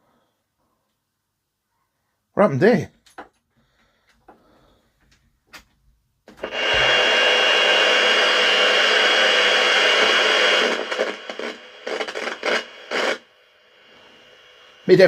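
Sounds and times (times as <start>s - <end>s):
radio static with high whistle: 6.4s - 15.0s.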